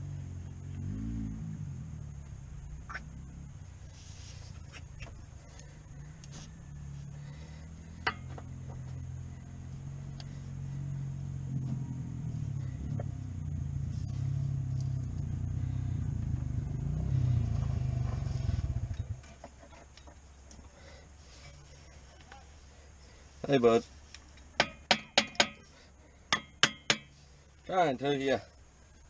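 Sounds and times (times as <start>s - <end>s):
vehicle engine running: 0.0s - 24.9s.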